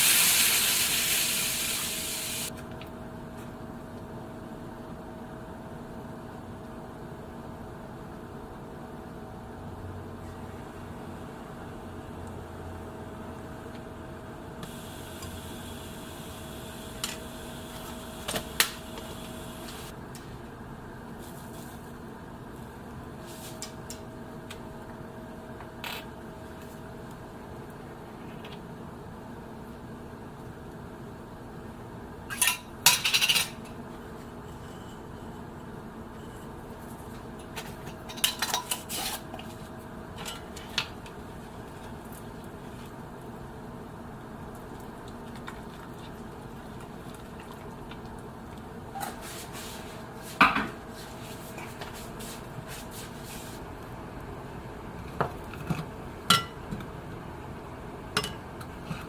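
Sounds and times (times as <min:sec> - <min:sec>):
steady background hum: 0:00.0 - 0:59.0
steady machine hum: 0:10.5 - 0:21.1.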